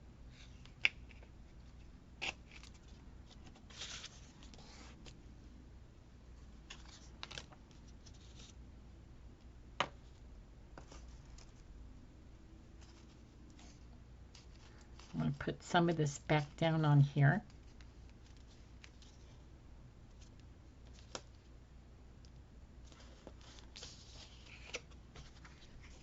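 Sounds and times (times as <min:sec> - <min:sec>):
paper and tape rustling: 0:01.0 - 0:05.2.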